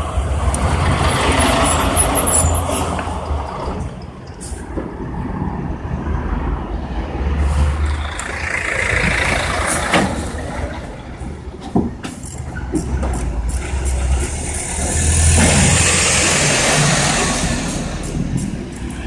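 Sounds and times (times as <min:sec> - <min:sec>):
traffic engine rumble: 0:00.0 - 0:19.0
vehicle passing: 0:00.2 - 0:03.4, 0:13.5 - 0:19.0.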